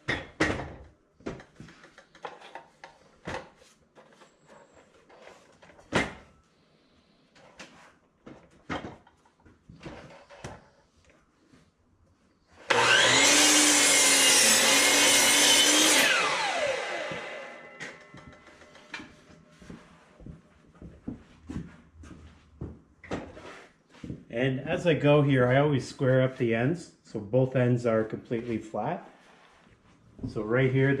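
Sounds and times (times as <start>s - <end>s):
mitre saw cutting wood: 12.6s - 18.7s
saw blade winding down whine: 12.7s - 18.9s.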